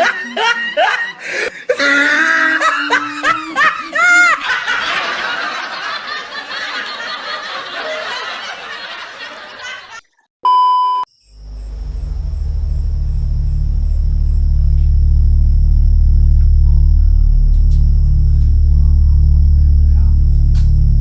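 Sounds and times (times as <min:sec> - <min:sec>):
many people laughing: 0:00.0 - 0:10.2
short beep: 0:10.4 - 0:11.1
low rumbling music drone: 0:11.4 - 0:21.0.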